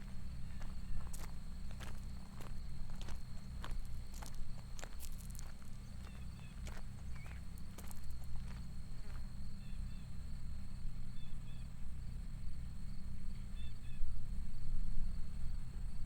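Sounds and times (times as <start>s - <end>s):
footsteps on path: 0.0s - 9.4s
constant low rumble: 0.0s - 16.0s.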